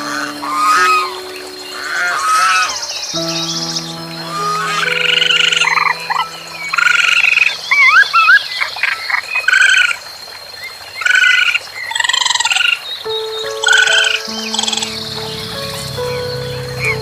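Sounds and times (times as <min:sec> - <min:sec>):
soft background music: 0:00.0 - 0:08.7, 0:13.0 - 0:17.0
croaking animal calls: 0:00.0 - 0:12.9.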